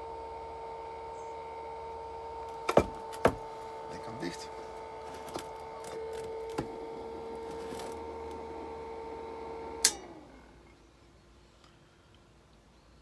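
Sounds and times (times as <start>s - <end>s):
blower fan whining: 0.0s - 10.8s
smoker handling clicks: 9.8s - 10.1s
switch click: 9.8s - 10.1s.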